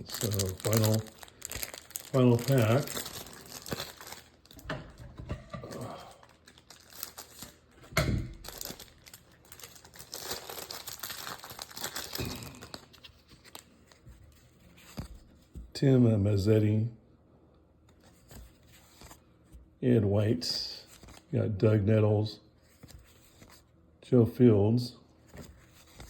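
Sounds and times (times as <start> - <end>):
plastic wrapper crinkling and tearing: 0.0 - 14.1.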